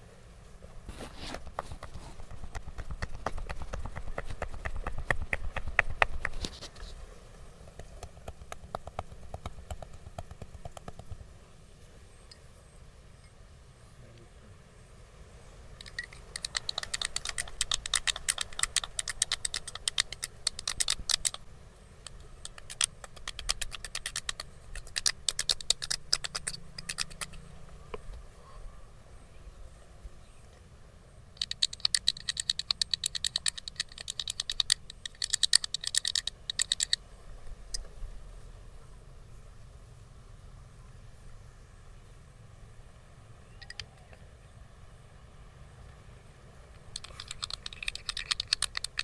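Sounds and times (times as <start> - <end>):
wooden sticks tapping on body: 1.4 - 6.6, 7.7 - 11.3, 15.9 - 21.4, 22.1 - 27.4.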